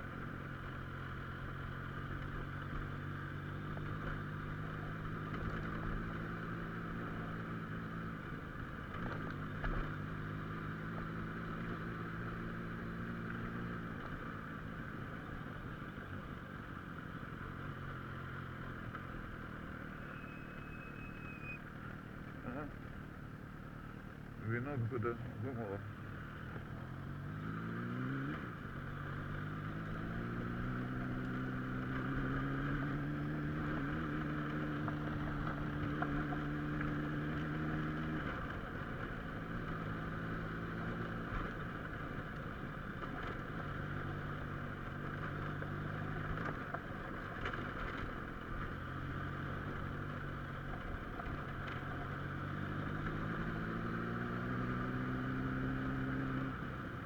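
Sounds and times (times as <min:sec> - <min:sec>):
road noise: 0:00.0 - 0:57.0
car engine accelerating: 0:24.3 - 0:57.0.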